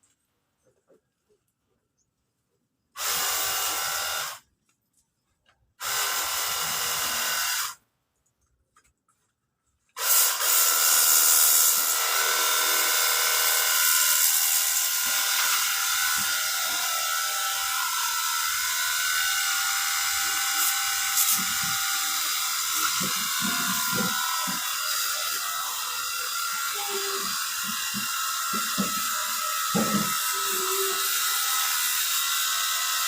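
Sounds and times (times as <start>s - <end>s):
pressure washer spraying water: 10.0s - 11.9s, 20.2s - 25.3s.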